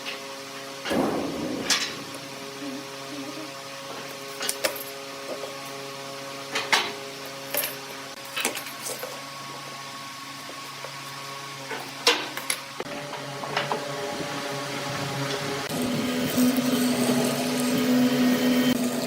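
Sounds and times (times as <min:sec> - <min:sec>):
sharp knocks and clicks: 0:00.9 - 0:02.8
steady hum: 0:00.9 - 0:03.7.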